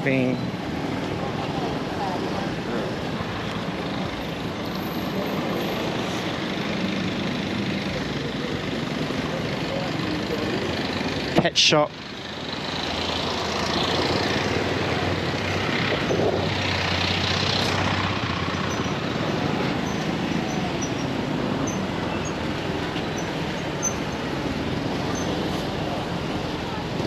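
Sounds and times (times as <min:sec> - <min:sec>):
vehicles passing: 0:00.0 - 0:27.0.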